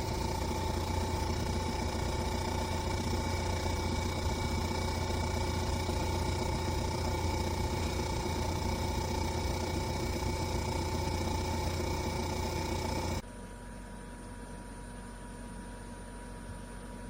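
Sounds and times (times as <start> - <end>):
machine humming: 0.0 - 13.2.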